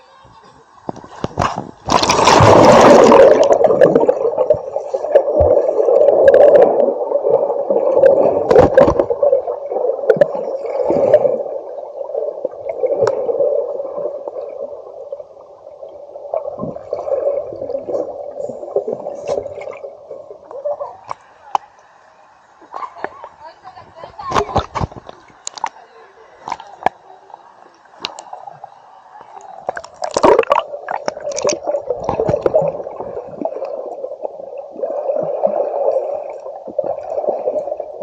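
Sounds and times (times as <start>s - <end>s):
river water churning and bubbling: 1.0s - 21.6s, 24.4s - 38.0s
loud water splash: 1.4s - 4.2s.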